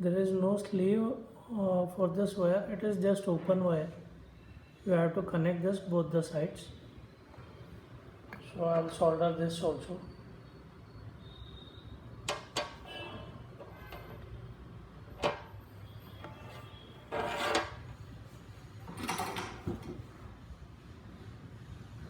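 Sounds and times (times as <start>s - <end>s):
scraping rustles: 16.2s - 18.5s.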